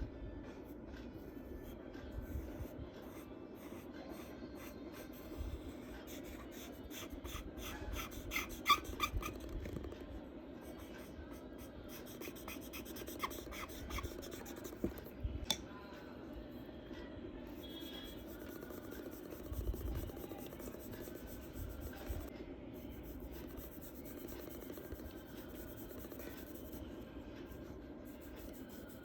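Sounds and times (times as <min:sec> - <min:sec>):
steady low hum: 0:00.0 - 0:29.0
charcoal scratching on paper: 0:06.0 - 0:09.8, 0:11.0 - 0:15.0, 0:17.6 - 0:26.8, 0:28.1 - 0:29.0.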